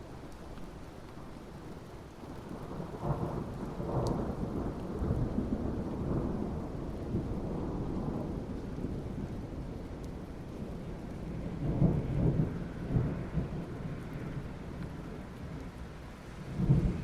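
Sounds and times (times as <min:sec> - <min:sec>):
steady rain: 0:00.0 - 0:17.0
rolling thunder: 0:16.4 - 0:17.0
faint thunder crack: 0:16.5 - 0:17.0.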